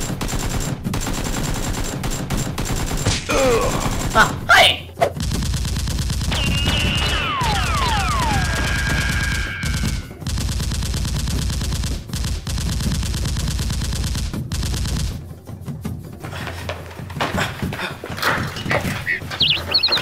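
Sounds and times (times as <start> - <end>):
rapid automatic gunfire: 0.0 - 4.4, 5.2 - 15.3
falling whistles: 6.3 - 10.2, 19.1 - 20.0.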